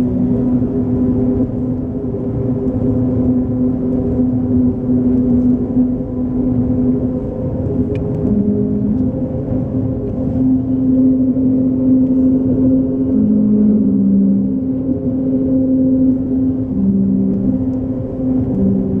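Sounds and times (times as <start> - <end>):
road and wind rumble: 0.0 - 19.0.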